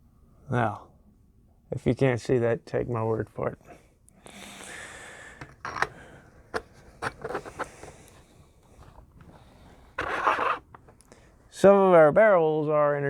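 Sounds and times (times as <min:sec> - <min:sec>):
scrape or rustle: 0:06.6 - 0:11.0.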